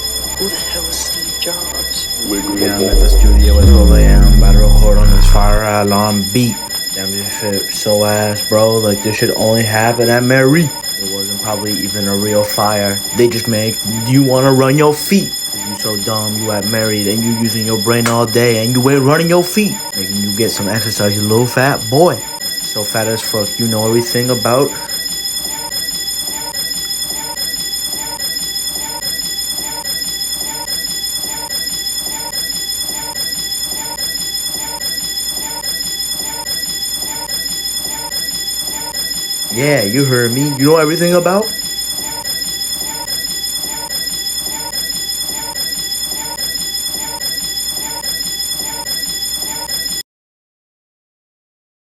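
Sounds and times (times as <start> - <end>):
low repeating sound: 0.0 - 5.8
fire alarm high-pitched tone: 0.0 - 50.0
low pulsing alarm sound: 0.0 - 50.0.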